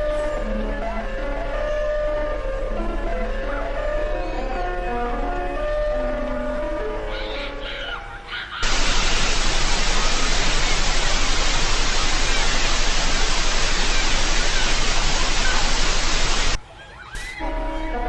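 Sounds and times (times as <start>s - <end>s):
loud static hiss: 8.6s - 16.6s.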